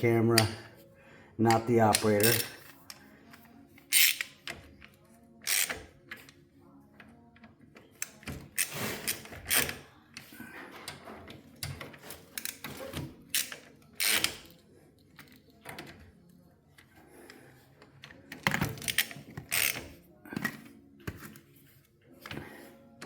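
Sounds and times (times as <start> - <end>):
hand ratchet clicking: 1.9 - 2.6, 3.9 - 4.6, 5.4 - 5.9, 13.3 - 14.5, 18.8 - 19.9.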